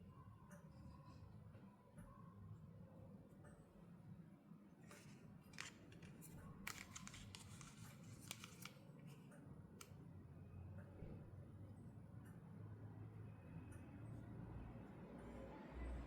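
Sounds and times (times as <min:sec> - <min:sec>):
toy packaging clicking and crackling: 0:04.9 - 0:08.9.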